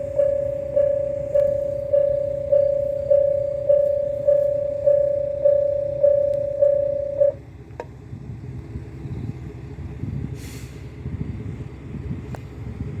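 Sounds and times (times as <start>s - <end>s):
level crossing warning bell: 0.0s - 7.5s
low engine rumble: 0.0s - 13.0s
air hiss: 10.4s - 10.9s.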